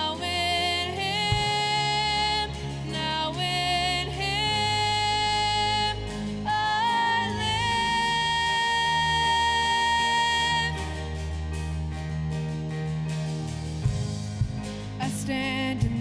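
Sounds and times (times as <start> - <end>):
singer holding long notes: 0.0 - 12.3
band accompaniment: 6.0 - 16.0.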